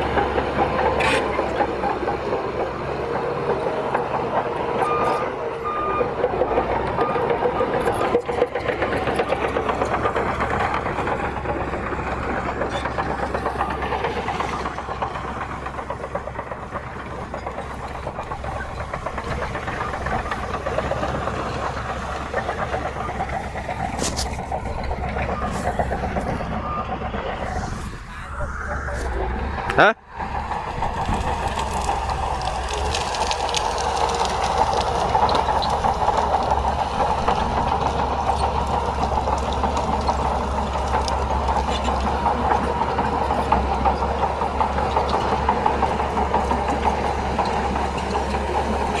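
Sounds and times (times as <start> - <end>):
bulldozer diesel engine under load: 0.0 - 49.0
steel tracks grinding and clanking: 0.0 - 49.0
reversing alarm beeping: 4.8 - 8.2, 24.8 - 30.1.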